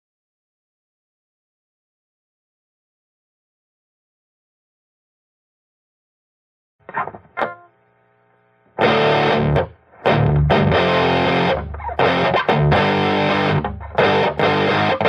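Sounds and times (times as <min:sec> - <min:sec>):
distorted electric guitar riffing: 0:06.9 - 0:07.7, 0:08.8 - 0:15.0
electric guitar chord ringing: 0:06.9 - 0:07.7, 0:08.8 - 0:15.0.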